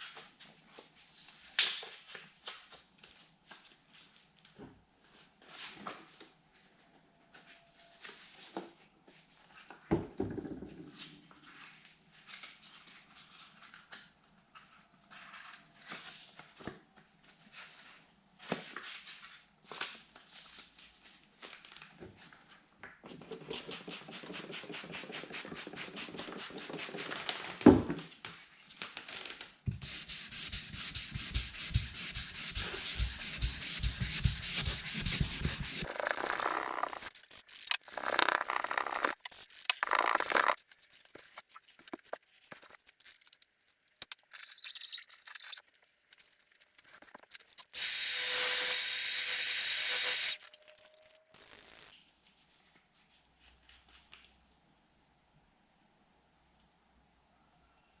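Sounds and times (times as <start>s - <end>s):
sandpaper rubbing on car paint: 29.8s - 37.3s, 47.7s - 51.9s.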